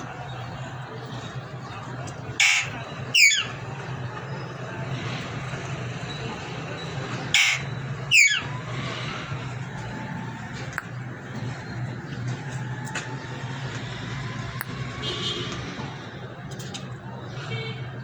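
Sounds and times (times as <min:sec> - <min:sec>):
parrot squawking: 0:02.4 - 0:03.6, 0:07.3 - 0:08.5.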